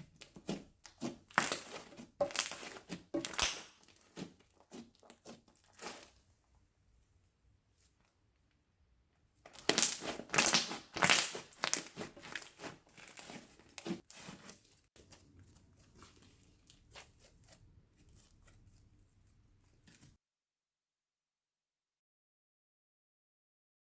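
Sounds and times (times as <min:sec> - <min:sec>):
hands squishing slime: 0:00.0 - 0:06.2, 0:09.5 - 0:20.1.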